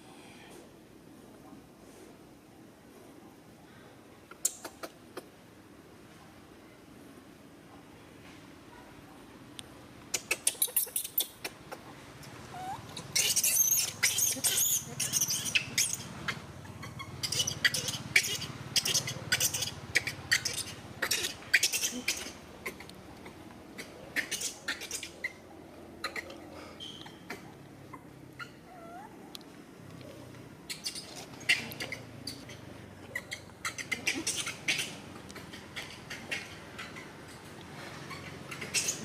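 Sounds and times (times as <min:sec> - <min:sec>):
monkeys squeaking and chirping: 0:10.1 - 0:29.2, 0:30.6 - 0:39.0.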